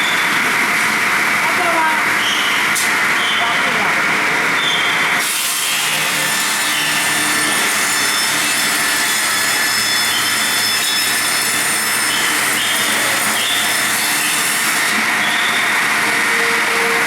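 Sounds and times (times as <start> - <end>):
circular saw cutting log: 4.6 - 17.0.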